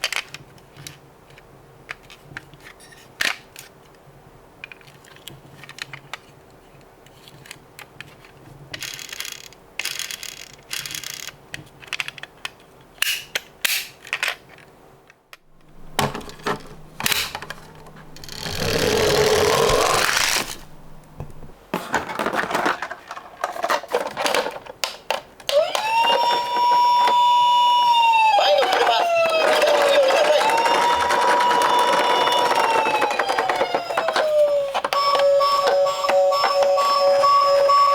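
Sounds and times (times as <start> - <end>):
toy cars clicking and clacking: 7.1 - 14.6, 16.3 - 20.6, 22.1 - 37.9
siren tone: 25.5 - 37.9.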